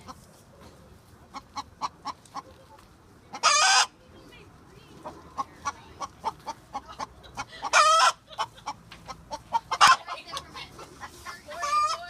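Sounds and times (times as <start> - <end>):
chickens clucking: 0.0 - 12.0
hen squawking loudly: 3.4 - 3.9, 11.0 - 12.0.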